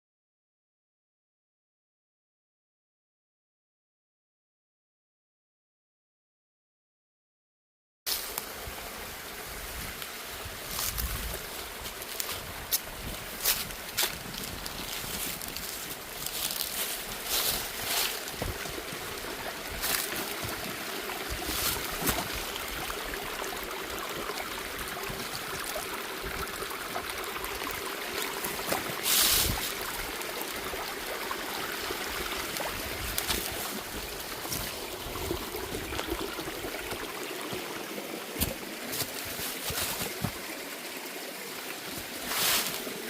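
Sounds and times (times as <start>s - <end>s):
strong wind blowing snow: 29.0s - 29.8s.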